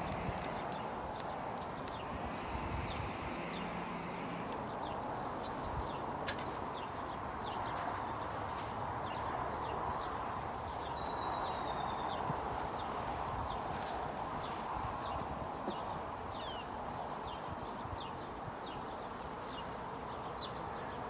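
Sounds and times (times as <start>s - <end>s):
honeybees buzzing: 0.0s - 16.0s.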